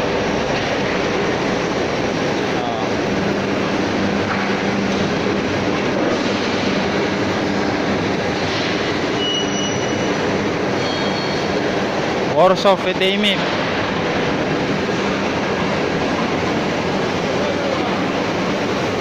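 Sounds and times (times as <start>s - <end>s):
high squeals: 9.1s - 11.6s.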